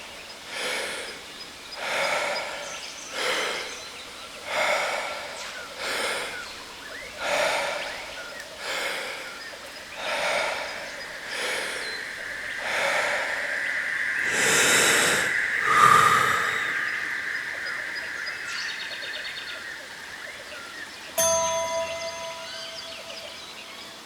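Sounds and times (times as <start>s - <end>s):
person breathing deeply: 0.5s - 1.2s, 1.8s - 6.6s, 7.2s - 17.6s
waterfall: 14.2s - 18.0s
steady high tone: 21.2s - 24.0s.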